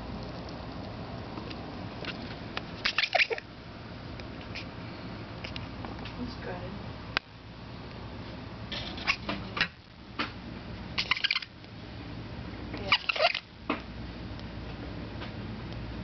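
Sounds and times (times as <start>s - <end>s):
rat sneeze-like bursts: 2.8s - 3.4s, 12.9s - 13.4s.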